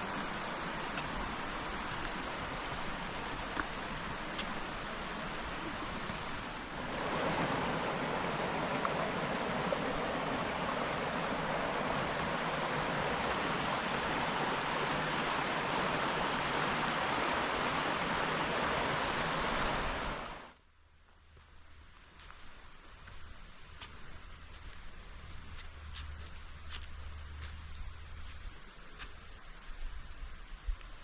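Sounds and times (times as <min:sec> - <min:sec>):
stream water rushing: 0:00.0 - 0:20.6.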